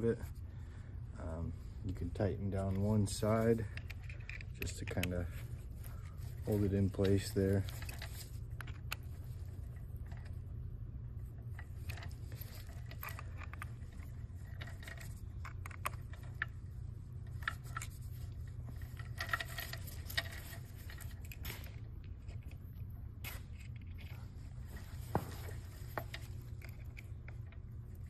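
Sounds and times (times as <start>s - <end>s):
steady low hum: 0.0s - 28.0s
metal tools clicking and scraping: 2.5s - 9.1s.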